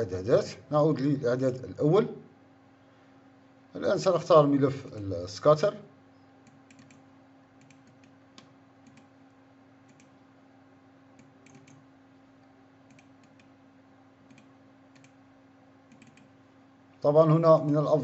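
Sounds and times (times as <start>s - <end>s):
low steady hum: 0.0s - 18.0s
computer mouse clicking: 6.4s - 7.0s, 7.6s - 9.1s, 9.8s - 10.2s, 11.2s - 11.8s, 12.9s - 13.5s, 14.3s - 15.2s, 15.9s - 16.3s.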